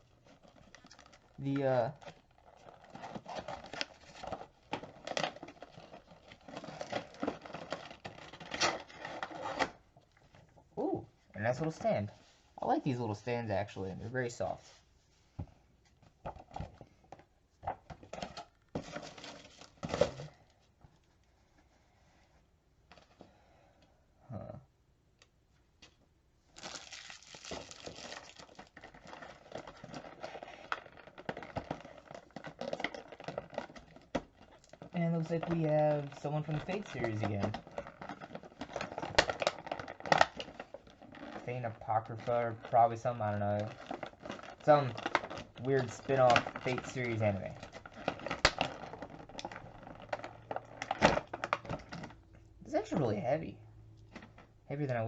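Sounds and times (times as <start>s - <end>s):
packaging rustling and crinkling: 0.0s - 10.5s, 16.2s - 20.7s, 26.5s - 52.2s.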